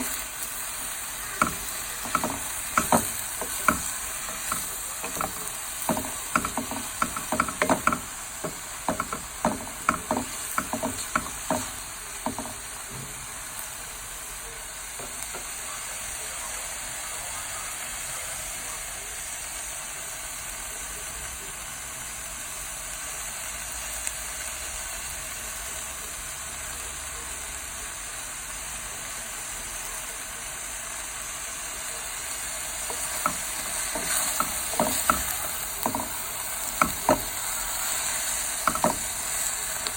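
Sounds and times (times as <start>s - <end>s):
spatula scraping a pan: 0.0s - 12.7s, 32.8s - 39.4s
vegetables sizzling in a pan: 0.0s - 39.9s.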